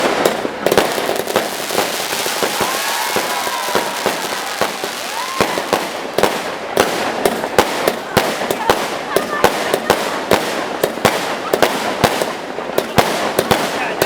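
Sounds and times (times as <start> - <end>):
fireworks bangs: 0.0 - 14.0
fireworks crackling: 0.0 - 14.0
firework whistles: 1.0 - 5.8.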